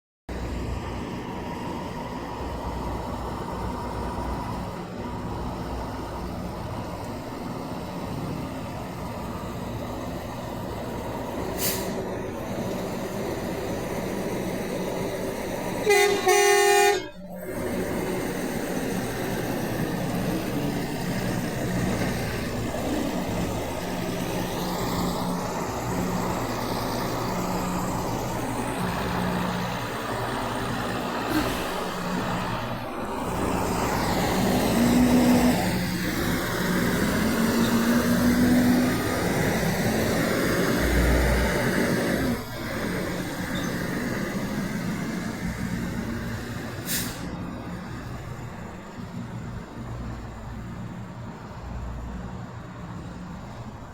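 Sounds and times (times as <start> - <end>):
truck diesel engines running: 0.3 - 53.9
short air hiss: 11.6 - 12.0, 46.8 - 47.4.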